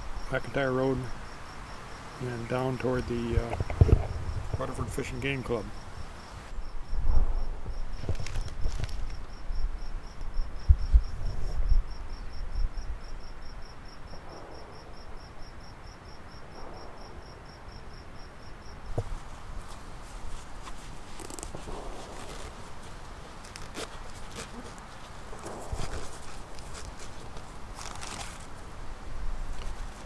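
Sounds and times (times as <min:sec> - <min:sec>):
wind rumble on microphone: 0:03.3 - 0:15.1.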